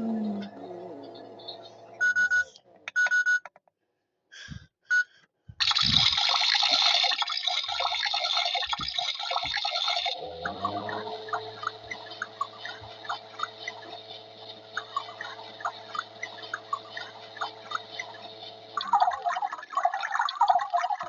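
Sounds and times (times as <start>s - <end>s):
toy motor hum: 0.0s - 2.5s, 5.6s - 21.0s
short electronic beeps: 1.2s - 3.6s
small bubbling sounds: 5.6s - 13.8s, 18.8s - 21.0s
water gushing: 5.6s - 21.0s.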